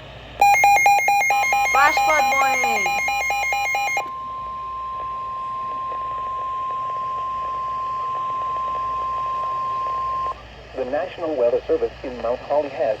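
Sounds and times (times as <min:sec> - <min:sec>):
steady alarm tone: 0:00.4 - 0:10.3.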